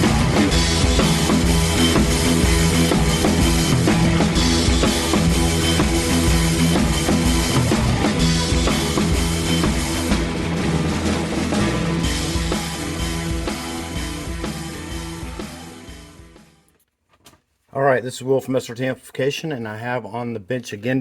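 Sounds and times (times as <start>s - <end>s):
rock music with drums and guitar: 0.0s - 16.6s.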